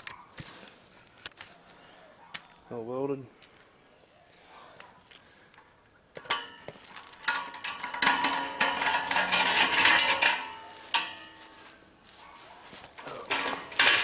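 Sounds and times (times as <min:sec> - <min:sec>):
metal frame clattering and rattling: 0:06.2 - 0:11.8, 0:12.9 - 0:14.0.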